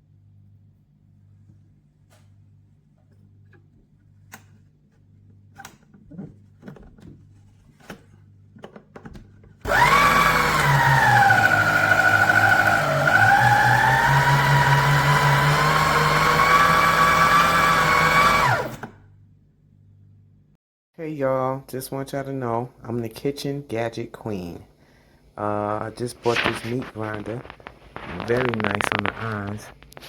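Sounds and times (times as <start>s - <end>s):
meat grinder motor whining: 9.6s - 19.0s.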